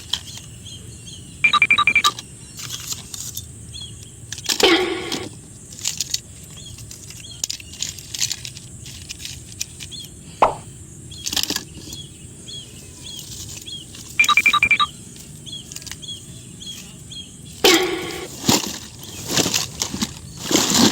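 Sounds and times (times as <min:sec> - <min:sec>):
faint high chirps: 0:01.4 - 0:02.2, 0:14.2 - 0:14.9
rapid electronic beeps: 0:01.4 - 0:02.2, 0:14.2 - 0:14.9
plastic toys clicking and knocking: 0:01.5 - 0:10.2, 0:11.2 - 0:12.1.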